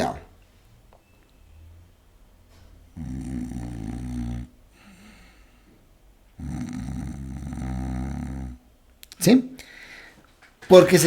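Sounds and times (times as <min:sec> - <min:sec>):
man snoring: 0:02.9 - 0:05.7, 0:06.4 - 0:08.7.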